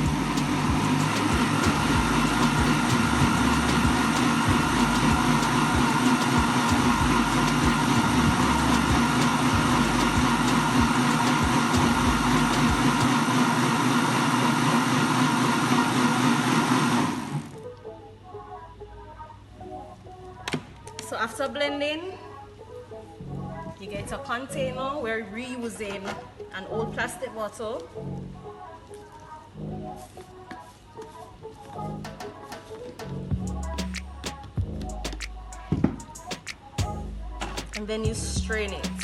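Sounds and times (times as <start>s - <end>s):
electric blender running: 7.8s - 17.4s.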